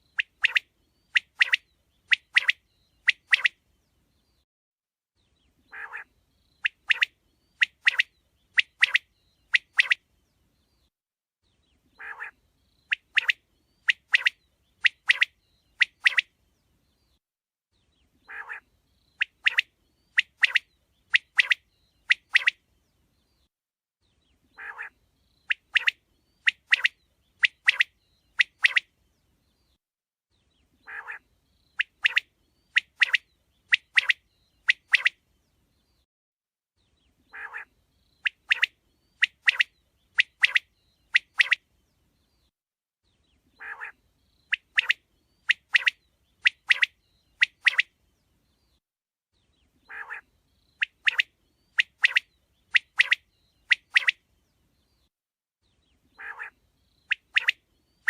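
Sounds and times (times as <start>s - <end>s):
quail calling: 5.7s - 9.0s, 12.0s - 14.3s, 18.3s - 20.6s, 24.6s - 28.8s, 30.8s - 31.2s, 37.3s - 37.7s, 43.6s - 47.8s, 49.9s - 50.2s, 56.2s - 57.6s.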